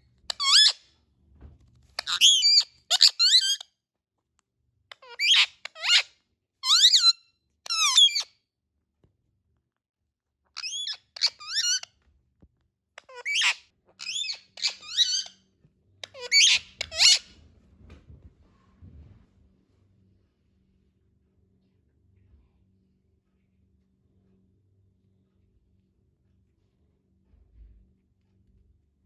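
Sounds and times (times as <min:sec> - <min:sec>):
parakeet squawking: 0:00.3 - 0:00.8, 0:02.0 - 0:03.6, 0:05.0 - 0:08.3, 0:10.6 - 0:11.9, 0:13.0 - 0:15.4, 0:16.0 - 0:17.3.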